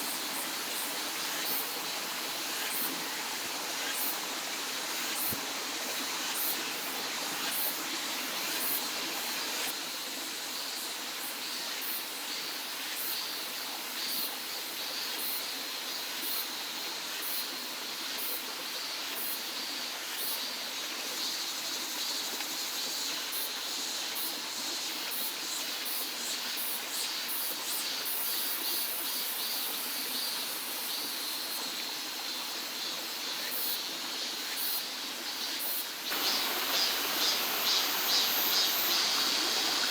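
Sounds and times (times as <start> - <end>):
mountain stream rushing: 36.0 - 39.9.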